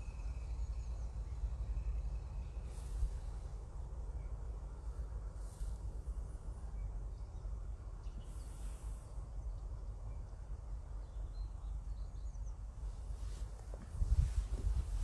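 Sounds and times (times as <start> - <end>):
low uneven rumble: 11.2 - 15.0.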